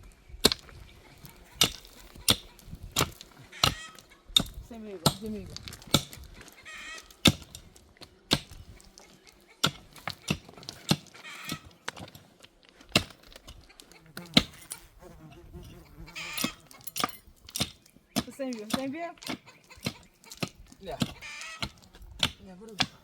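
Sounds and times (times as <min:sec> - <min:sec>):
wood being struck: 0:00.4 - 0:12.3, 0:12.9 - 0:14.7, 0:16.2 - 0:23.0
livestock bleating: 0:06.6 - 0:07.2, 0:15.8 - 0:16.8.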